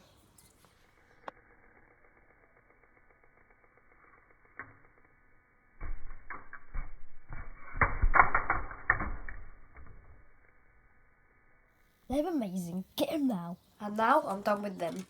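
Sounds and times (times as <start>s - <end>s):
plastic toys clattering in slow motion: 1.3s - 10.8s.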